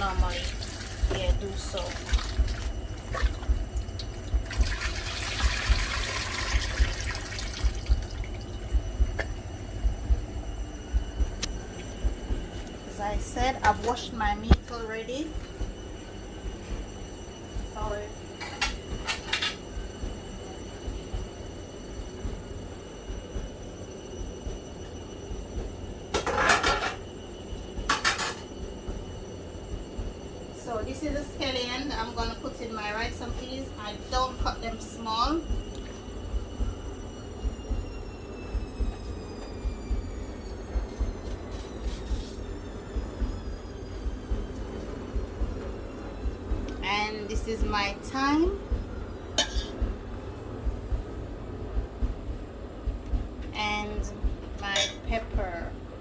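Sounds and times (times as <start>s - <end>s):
tap water running and splashing: 0.0s - 9.4s
low steady hum: 0.0s - 56.0s
kitchen utensils clattering: 18.4s - 19.6s, 26.2s - 27.0s, 27.9s - 28.5s, 49.4s - 49.8s.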